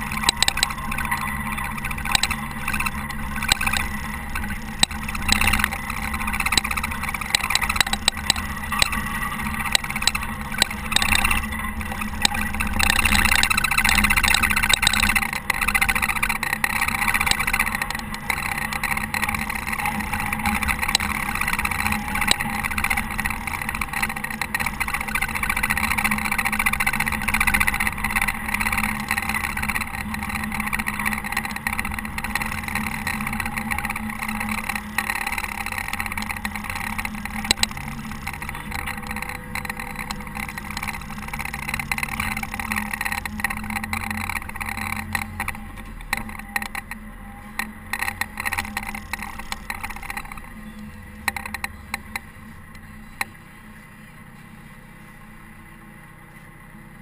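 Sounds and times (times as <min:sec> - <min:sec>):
knocks and rattles: 0:00.0 - 0:52.4
diesel engine running: 0:00.0 - 0:57.0.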